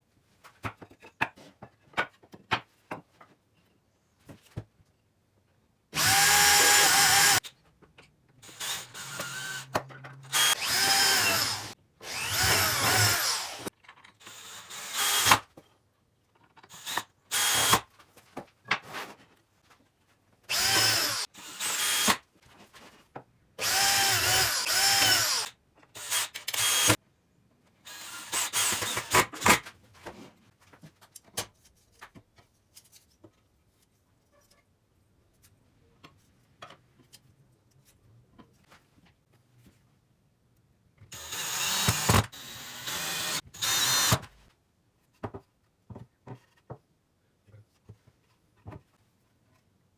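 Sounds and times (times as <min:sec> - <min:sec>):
electric drill whining: 0:06.0 - 0:07.4, 0:08.4 - 0:15.3, 0:20.5 - 0:22.1, 0:23.6 - 0:27.0, 0:41.2 - 0:44.2.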